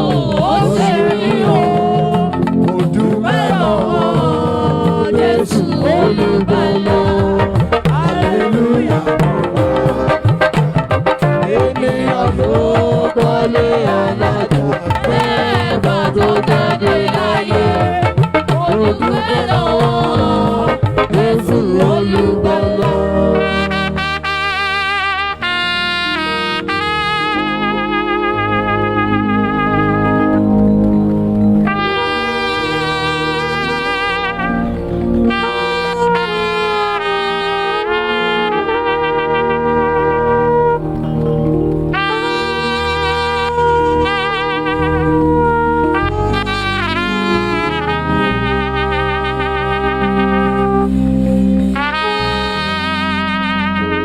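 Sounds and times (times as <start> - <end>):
fast hand drums and percussion: 0.0 - 23.4, 40.0 - 47.1
people singing: 0.0 - 24.7, 31.4 - 50.9
sustained keyboard and bass: 0.0 - 54.0
wind instrument melody: 0.0 - 54.0.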